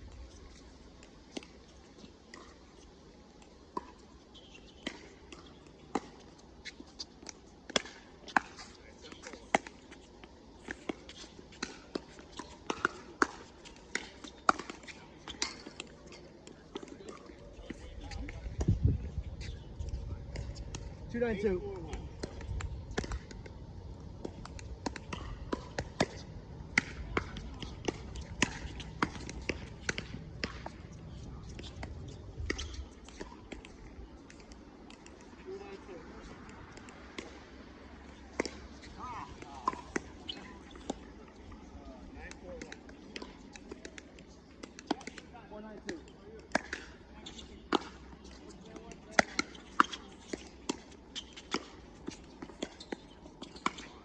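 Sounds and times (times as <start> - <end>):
ball bouncing: 21.7 - 23.5.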